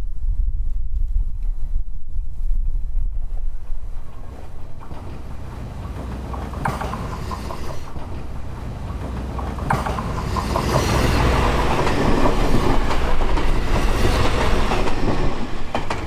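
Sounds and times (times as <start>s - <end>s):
diesel train engine hum: 2.6s - 16.0s
wheel clacks over rail joints: 4.0s - 16.0s.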